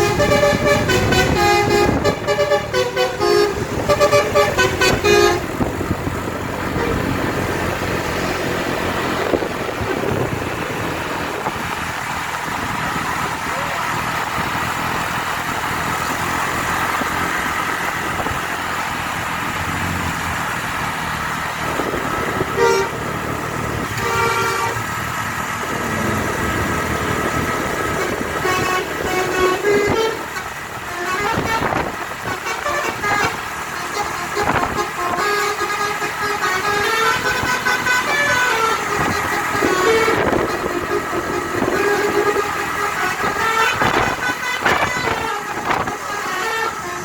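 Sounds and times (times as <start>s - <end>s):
bus air horn tune: 0.0s - 8.3s, 21.8s - 23.2s, 23.8s - 25.1s, 26.5s - 47.0s
engine running: 0.0s - 47.0s
road noise: 0.0s - 47.0s.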